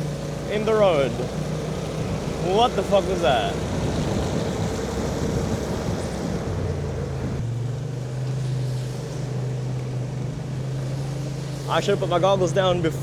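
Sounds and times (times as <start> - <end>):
scooter engine running: 0.0 - 13.0
wind noise: 1.8 - 7.5.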